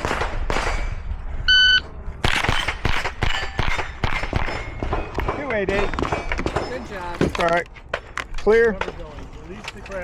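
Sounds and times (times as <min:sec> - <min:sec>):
shot timer beep: 0:01.5 - 0:01.8.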